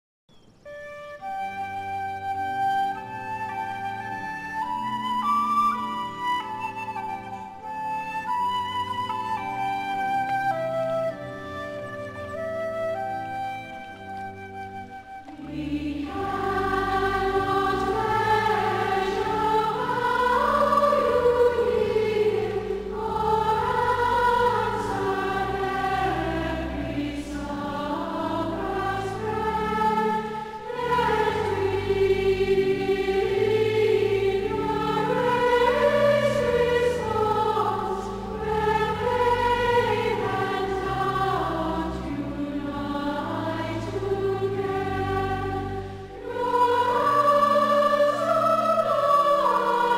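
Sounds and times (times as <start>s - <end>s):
sustained low accompanying notes: 0.5s - 49.9s
congregation singing a hymn: 15.2s - 49.9s.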